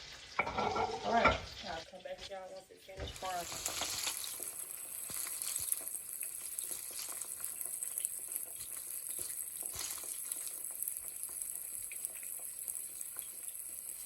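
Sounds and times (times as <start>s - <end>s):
oil crackling and popping: 0.0s - 0.9s, 3.1s - 14.0s
okra frying in oil: 0.0s - 14.0s.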